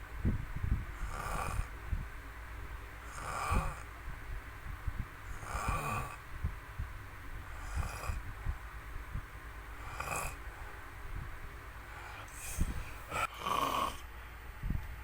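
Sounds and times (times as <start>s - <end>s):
person snoring: 1.0s - 2.0s, 3.0s - 3.9s, 5.2s - 6.4s, 7.4s - 8.4s, 9.7s - 11.2s, 11.8s - 14.0s.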